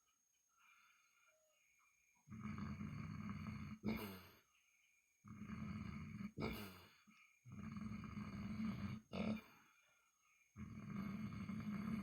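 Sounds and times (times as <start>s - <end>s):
pig snorting: 2.3s - 4.4s, 5.3s - 9.5s
pig snoring: 2.3s - 4.5s, 5.2s - 9.7s, 10.5s - 12.0s.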